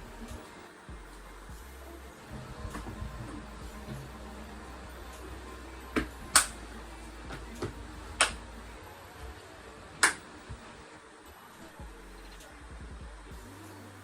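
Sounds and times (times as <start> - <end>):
sharp clicks or knocks: 10.0 - 10.2.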